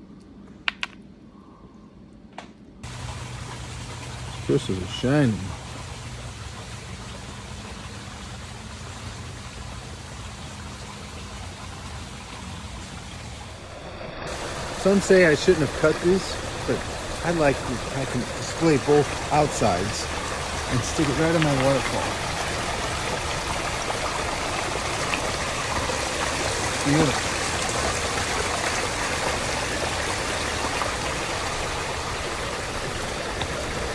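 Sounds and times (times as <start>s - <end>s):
running water rushing: 2.8s - 33.9s.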